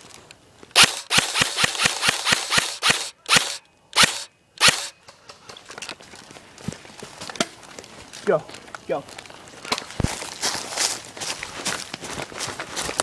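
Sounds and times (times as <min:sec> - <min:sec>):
airsoft gun firing pops: 0:00.8 - 0:05.0.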